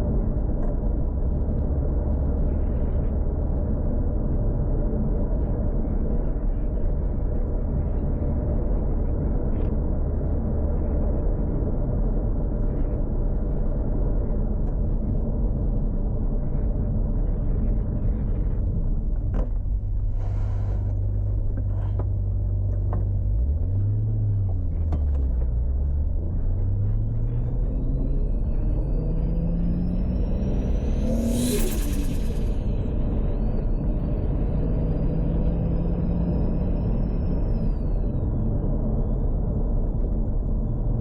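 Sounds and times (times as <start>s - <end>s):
car engine revving: 22.6s - 37.8s
hiss of released boost: 30.4s - 32.8s.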